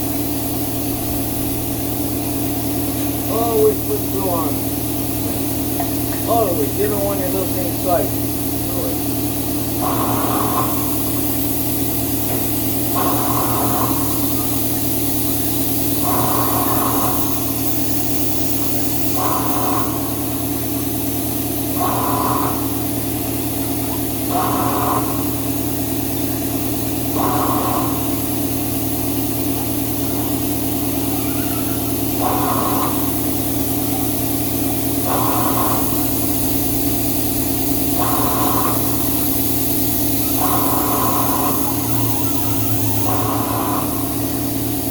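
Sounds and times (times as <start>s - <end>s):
shop machinery humming: 0.0s - 44.9s
higher machine tone: 39.2s - 44.8s.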